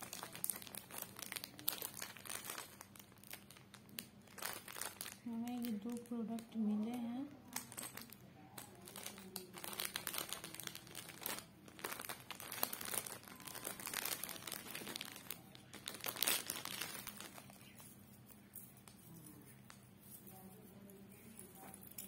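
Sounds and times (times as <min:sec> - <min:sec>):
packaging crinkling and rustling: 0:00.0 - 0:06.6, 0:07.4 - 0:18.0.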